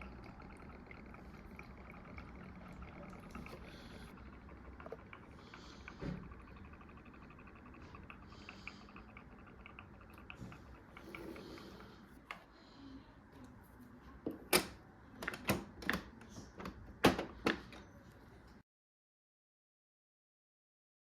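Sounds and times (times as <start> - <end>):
fine ticking: 0.0 - 12.1.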